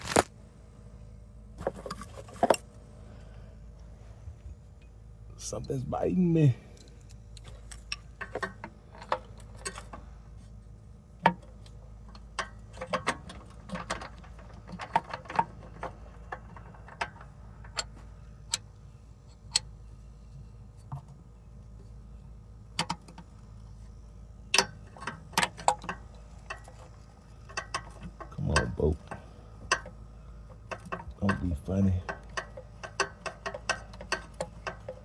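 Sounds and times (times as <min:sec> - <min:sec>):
ratchet wrench clicking: 0:30.6 - 0:35.0.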